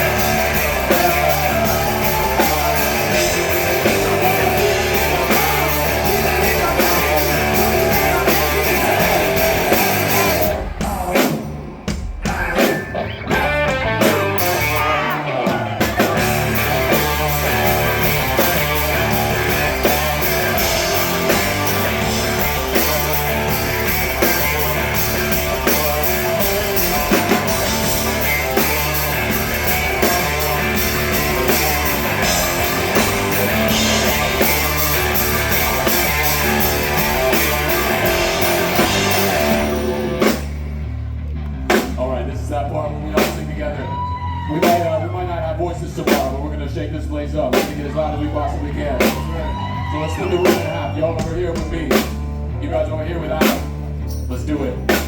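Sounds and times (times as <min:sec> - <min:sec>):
electric guitars: 0:00.0 - 0:42.0
drum kit: 0:00.0 - 0:42.3, 0:43.1 - 0:43.6, 0:49.0 - 0:55.0
bass: 0:00.0 - 0:55.0.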